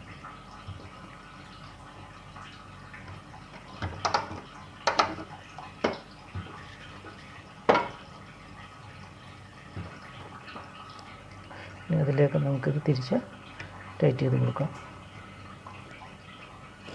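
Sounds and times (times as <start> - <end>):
water dripping and splashing: 0.0 - 16.9.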